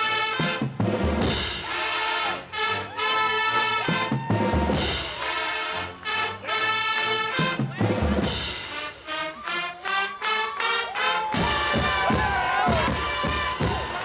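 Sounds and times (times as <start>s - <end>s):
drums steady beat: 0.0s - 1.9s, 3.8s - 5.4s, 7.3s - 9.1s, 11.3s - 14.0s
marching band brass chords: 0.0s - 14.0s.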